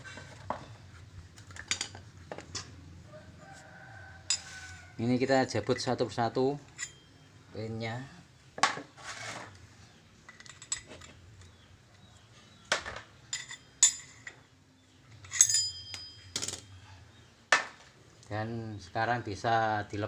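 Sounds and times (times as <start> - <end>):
metallic clinks and taps: 13.3 - 14.4, 15.2 - 16.8.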